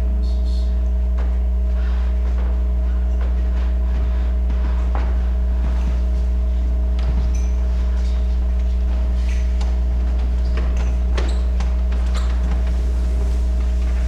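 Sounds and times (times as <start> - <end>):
electrical mains hum: 0.0 - 14.0.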